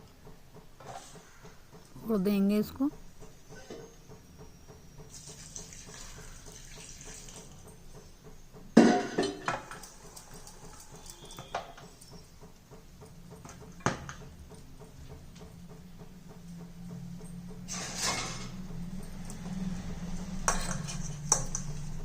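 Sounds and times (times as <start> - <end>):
water pouring into bowl: 5.1 - 7.6
dishes clattering: 8.8 - 9.9, 20.3 - 22.0.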